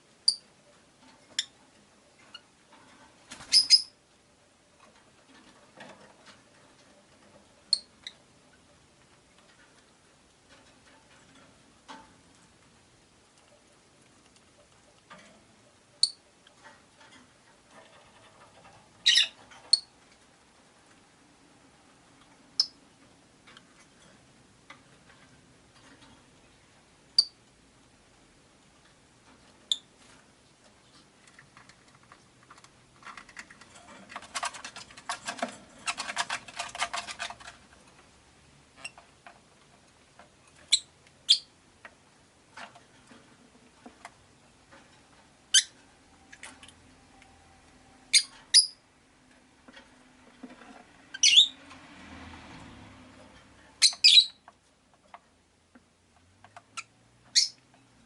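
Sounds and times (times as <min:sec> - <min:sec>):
lovebirds chirping: 0:03.4 - 0:03.9, 0:19.0 - 0:19.9, 0:40.7 - 0:41.5, 0:48.1 - 0:48.8, 0:51.1 - 0:51.6, 0:53.8 - 0:54.4, 0:56.8 - 0:57.6.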